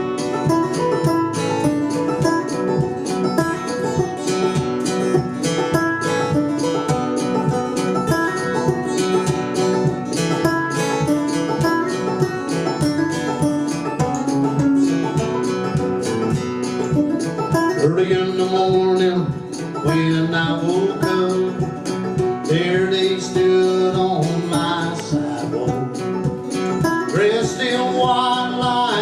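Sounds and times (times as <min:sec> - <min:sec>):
acoustic guitar picking: 0:00.0 - 0:29.0
band playing instrumental: 0:00.0 - 0:29.0.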